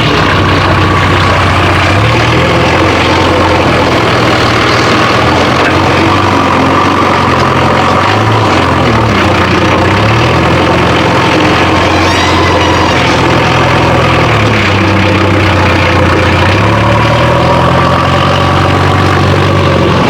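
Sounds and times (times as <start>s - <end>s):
heavy vehicle engine idling: 0.0s - 20.0s.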